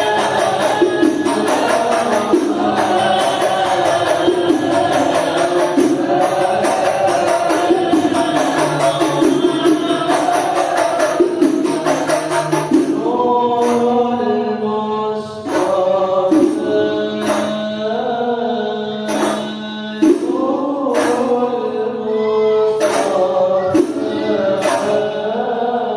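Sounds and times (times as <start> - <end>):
frame drum beats with jingling: 0.0 - 13.9, 15.5 - 17.7, 19.1 - 21.4, 22.8 - 25.1
voices singing together: 0.0 - 25.9.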